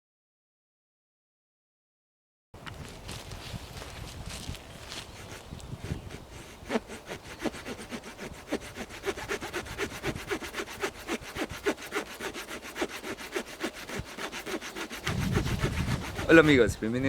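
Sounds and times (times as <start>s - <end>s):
saw blade cutting wood: 5.0s - 16.7s.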